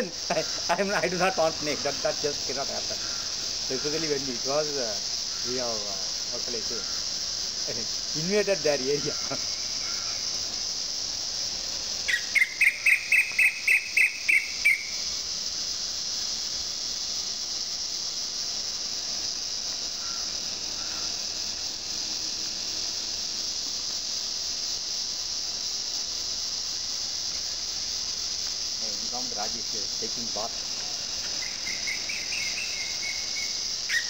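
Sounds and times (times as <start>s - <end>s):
insect chorus: 0.0s - 34.0s
bird call notes: 12.1s - 15.0s, 31.3s - 34.0s.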